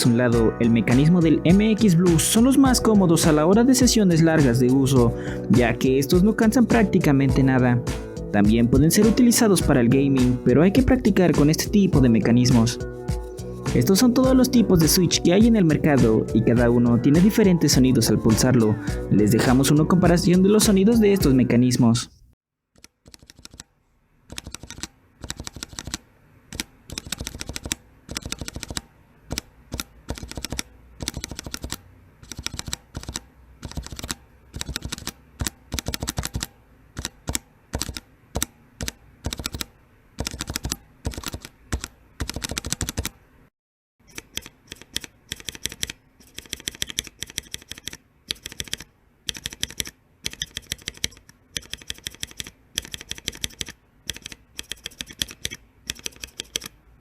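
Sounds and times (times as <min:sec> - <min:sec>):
mechanical keyboard key clicks: 0:24.3 - 0:43.1, 0:44.1 - 0:56.7.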